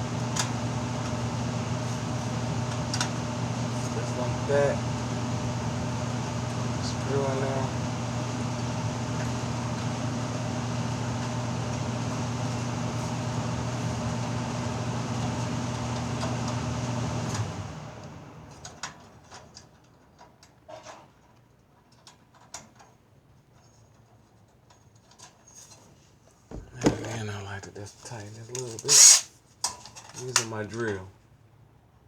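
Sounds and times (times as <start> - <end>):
fan motor humming: 0.0 - 19.5, 26.5 - 29.2.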